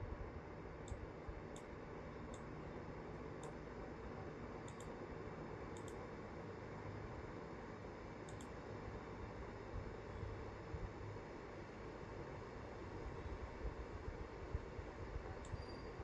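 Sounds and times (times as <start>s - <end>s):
room noise hiss: 0.0s - 16.0s
computer mouse clicking: 0.8s - 1.7s, 2.3s - 2.5s, 4.6s - 5.0s, 5.7s - 6.0s, 8.2s - 8.6s.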